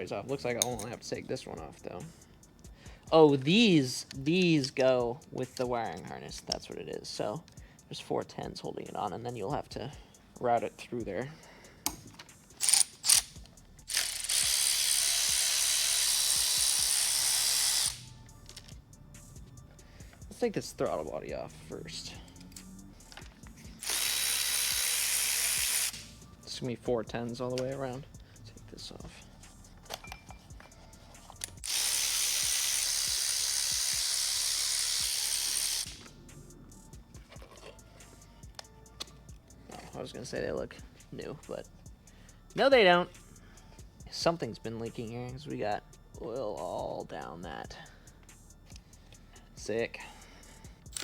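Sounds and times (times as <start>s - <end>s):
air tool hissing: 12.8s - 18.3s, 21.8s - 26.4s, 30.7s - 36.9s.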